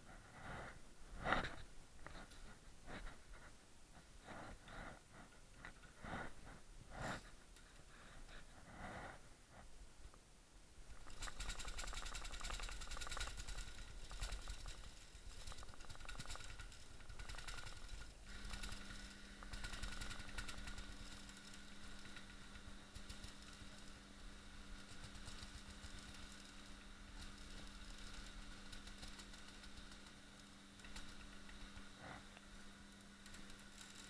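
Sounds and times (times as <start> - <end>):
low steady hum: 0.0 - 34.0.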